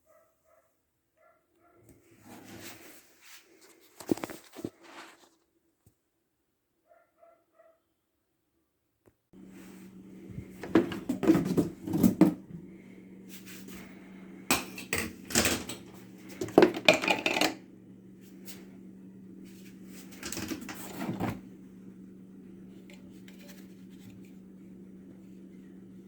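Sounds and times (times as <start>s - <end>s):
steady low hum: 9.4s - 26.0s
hard objects knocking and clattering: 10.6s - 12.5s, 16.4s - 17.6s.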